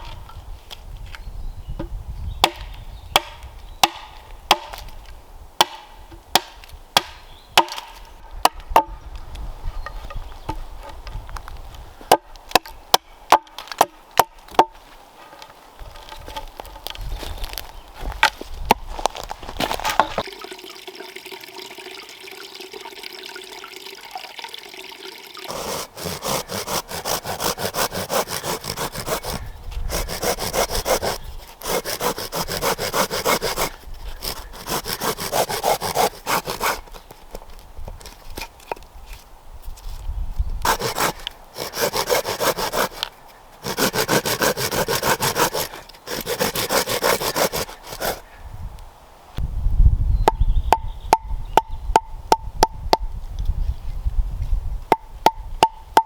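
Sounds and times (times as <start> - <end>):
sharp chopping knocks on wood: 1.8 - 4.9, 5.6 - 9.0
hand saw cutting wood: 25.5 - 37.1, 40.6 - 48.2.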